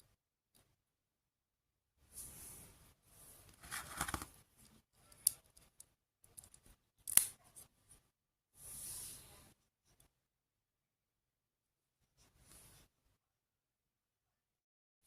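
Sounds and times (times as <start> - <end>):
scraping and rustling of packaging: 3.6 - 4.4.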